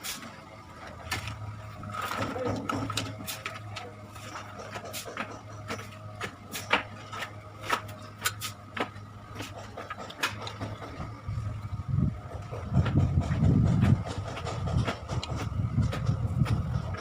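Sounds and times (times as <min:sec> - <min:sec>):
steady low hum: 0:00.0 - 0:17.0
dull low thumps: 0:11.6 - 0:17.0.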